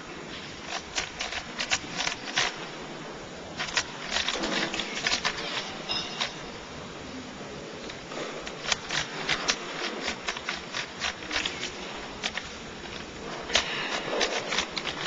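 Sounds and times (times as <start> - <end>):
steady background hiss: 0.0 - 15.0
puzzle cube plastic clicks: 0.6 - 2.6, 3.6 - 5.7, 7.9 - 15.0.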